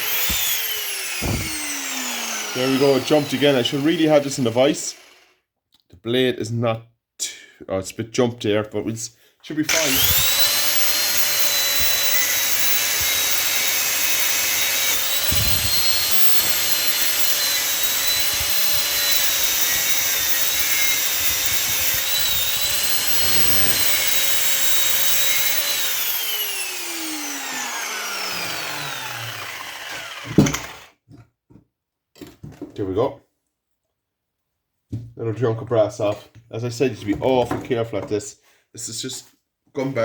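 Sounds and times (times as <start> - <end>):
angle grinder cutting metal: 0.0 - 5.3, 9.7 - 30.9.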